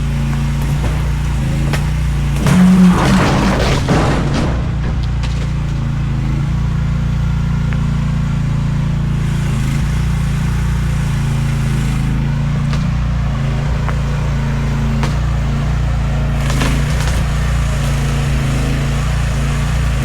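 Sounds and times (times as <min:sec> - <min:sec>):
excavator engine running: 0:00.0 - 0:20.0.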